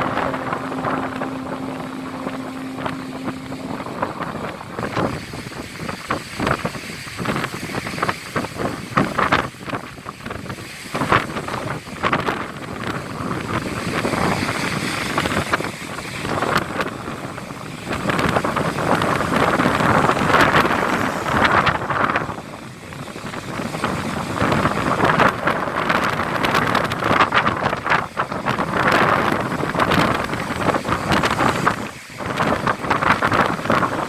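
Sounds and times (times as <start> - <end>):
heavy surf: 0.0 - 5.7, 17.4 - 24.1
gusting wind buffeting microphone: 8.7 - 34.0.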